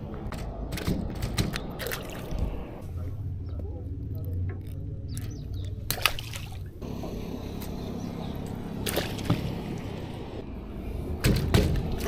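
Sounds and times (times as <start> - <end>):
steady low rumble: 6.6 - 12.0.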